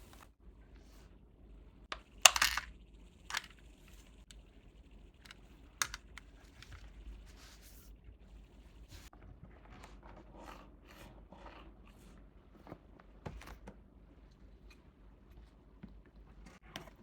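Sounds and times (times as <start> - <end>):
packaging clicks and taps: 1.9 - 2.7, 3.3 - 3.6, 5.2 - 6.8.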